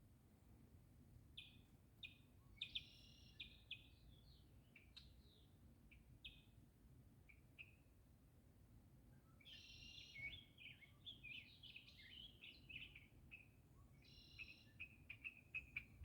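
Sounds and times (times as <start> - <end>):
blackbirds calling faintly: 9.2 - 16.0.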